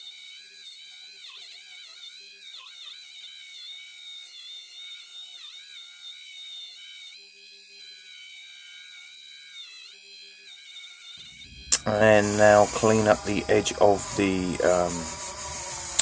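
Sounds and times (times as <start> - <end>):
polishing wheel whining: 11.2 - 16.0.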